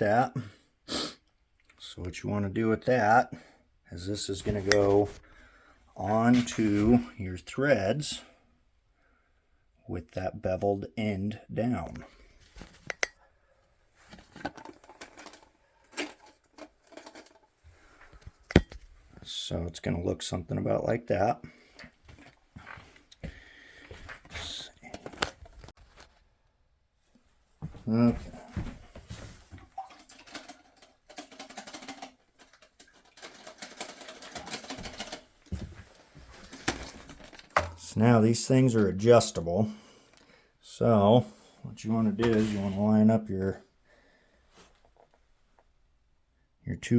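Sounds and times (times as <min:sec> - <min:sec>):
plastic parts clicking and rustling: 0:14.0 - 0:18.9, 0:24.0 - 0:26.2, 0:28.6 - 0:37.9.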